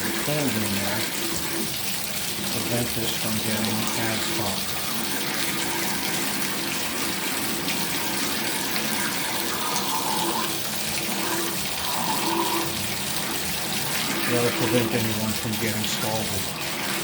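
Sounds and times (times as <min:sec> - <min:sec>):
shower water running: 0:00.0 - 0:17.0.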